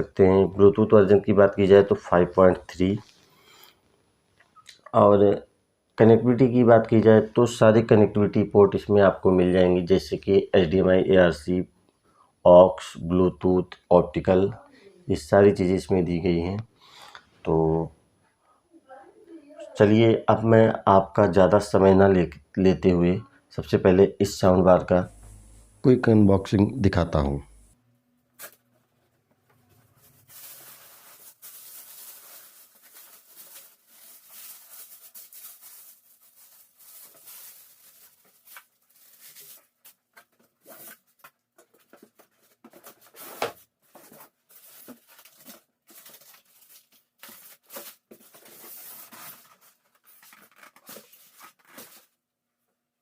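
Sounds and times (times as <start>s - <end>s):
packaging rustling and tearing: 29.8s - 52.2s.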